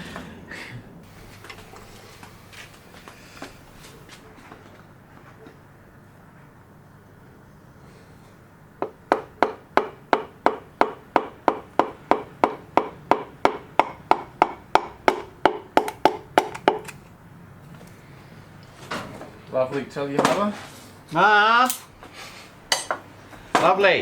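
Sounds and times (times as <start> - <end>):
piston being tapped into bore: 8.8 - 17.0.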